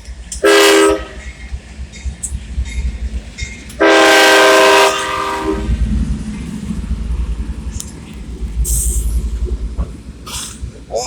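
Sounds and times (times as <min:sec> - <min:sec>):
low train rumble: 0:00.0 - 0:11.0
locomotive air horn blasts: 0:00.4 - 0:01.3, 0:03.8 - 0:05.8.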